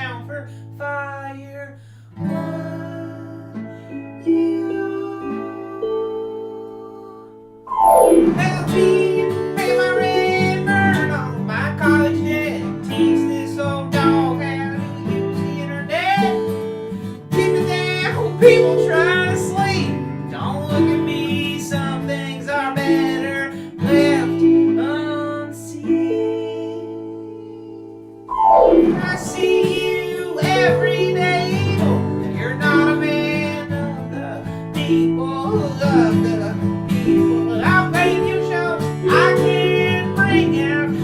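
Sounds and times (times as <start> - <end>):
sliding lead melody: 7.7 - 11.4, 28.3 - 33.2
acoustic guitar strumming: 7.7 - 25.0, 28.3 - 41.0.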